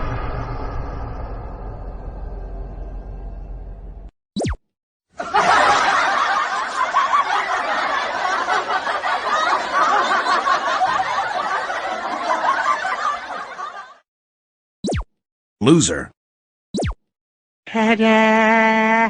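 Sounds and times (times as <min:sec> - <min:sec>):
crowd laughing: 0:05.2 - 0:14.0.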